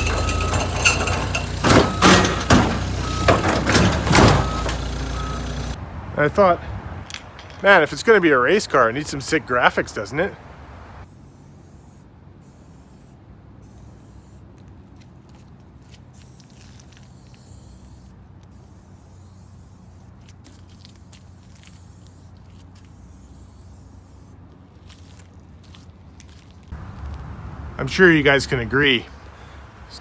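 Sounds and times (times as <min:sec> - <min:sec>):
spray-paint can hissing: 0:11.2 - 0:14.4, 0:16.2 - 0:19.9.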